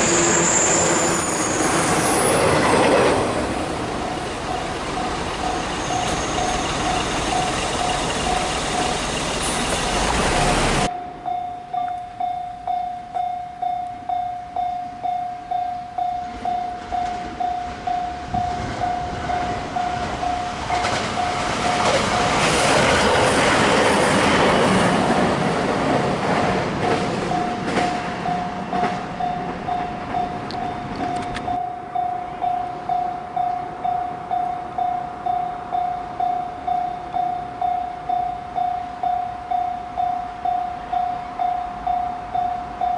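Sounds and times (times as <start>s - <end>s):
train rumble and wheel clatter: 0.0s - 42.9s
level crossing warning bell: 3.6s - 10.1s, 10.8s - 22.6s, 27.2s - 42.9s.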